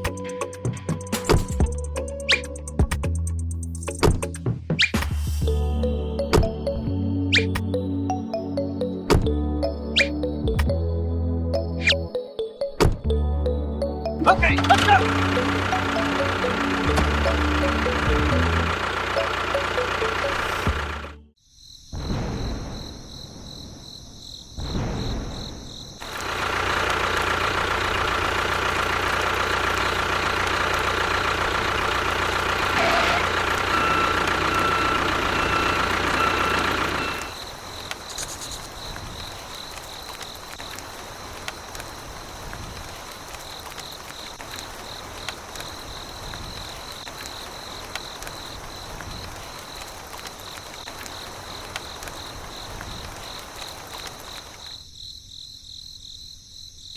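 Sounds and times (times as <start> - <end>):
small motor running: 14.6 - 21.2, 26.0 - 37.4
crickets chirping: 14.8 - 56.9.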